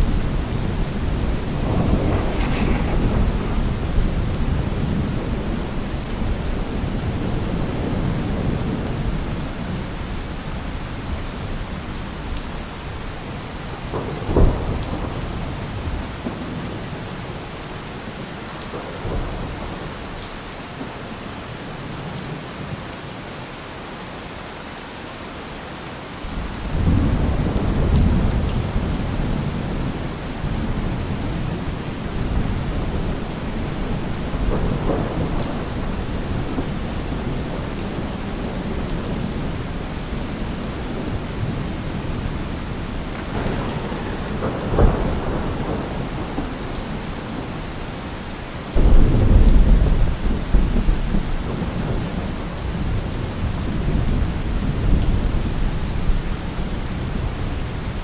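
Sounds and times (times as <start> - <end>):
sharp thunderclap: 0.0 - 8.6, 13.8 - 16.4, 26.3 - 39.4, 43.2 - 47.4, 48.8 - 52.8
rolling thunder rumble: 0.0 - 12.3, 12.9 - 17.4, 26.3 - 57.1
heavy rain: 0.0 - 58.0.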